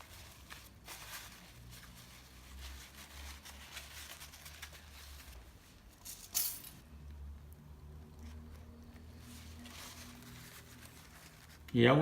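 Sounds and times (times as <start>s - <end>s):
tissue paper rustling and crinkling: 0.0s - 6.0s, 9.1s - 11.7s.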